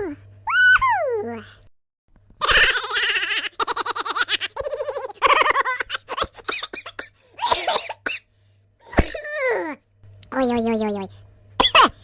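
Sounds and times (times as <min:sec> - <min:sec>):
high-pitched cackling laughter: 0:02.4 - 0:07.0.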